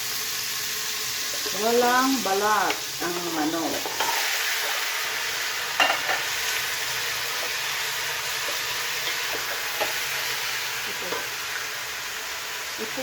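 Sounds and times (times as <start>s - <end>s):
chicken sizzling in oil: 0.0s - 13.0s.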